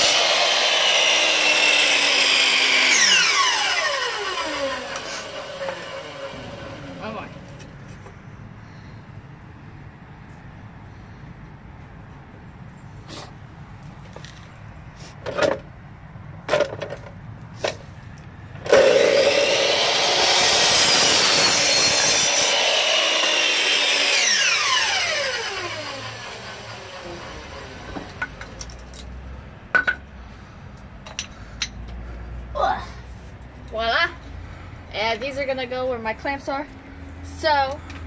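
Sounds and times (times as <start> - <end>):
power cutting tool: 0.0 - 7.5, 18.7 - 28.2.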